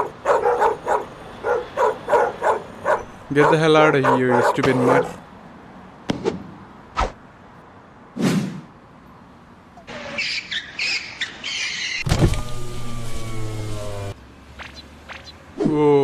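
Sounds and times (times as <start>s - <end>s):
held falling tone: 12.0s - 14.2s.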